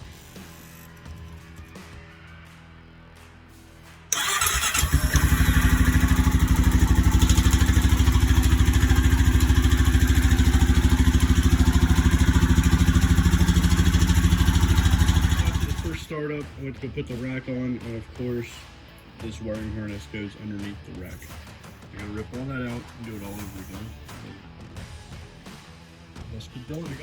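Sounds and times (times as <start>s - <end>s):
engine cranking: 4.1s - 16.1s
engine idling: 4.1s - 16.1s.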